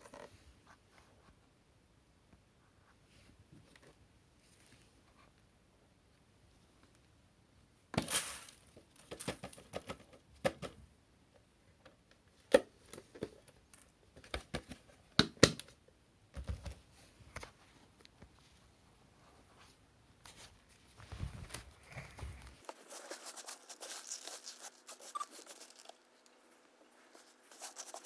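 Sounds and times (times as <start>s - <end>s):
rustling: 8.0s - 9.7s, 17.0s - 28.0s
plastic parts clicking and knocking: 8.8s - 10.8s.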